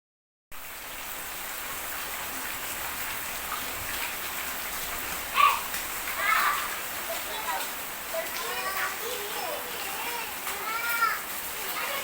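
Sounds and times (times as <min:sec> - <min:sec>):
steady rain falling: 0:00.5 - 0:12.0.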